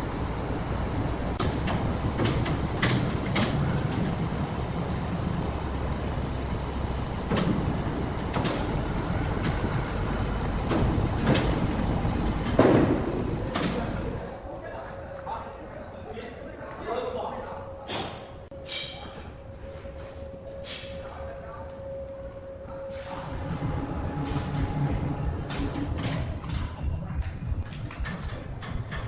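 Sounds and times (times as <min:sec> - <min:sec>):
heavy machinery rumbling: 0:00.0 - 0:15.9, 0:17.7 - 0:29.0
metallic clanks and knocks: 0:24.2 - 0:29.0.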